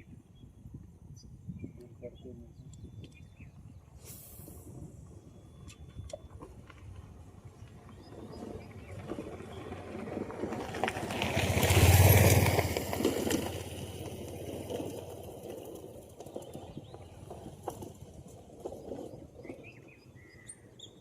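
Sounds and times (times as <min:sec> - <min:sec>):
motor engine passing by: 0:07.8 - 0:19.9.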